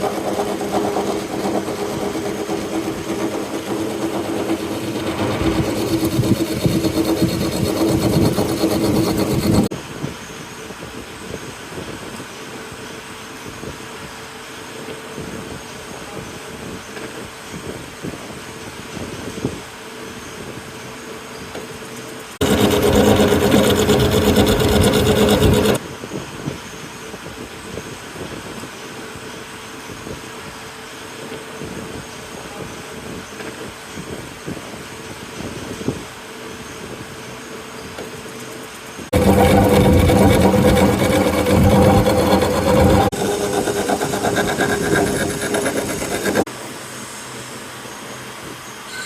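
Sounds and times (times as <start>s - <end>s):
cutter grinding and rattling: 0.0s - 9.7s, 22.4s - 25.8s, 39.1s - 46.5s
milling machine motor hum: 0.0s - 9.7s, 22.4s - 25.8s, 39.1s - 46.5s.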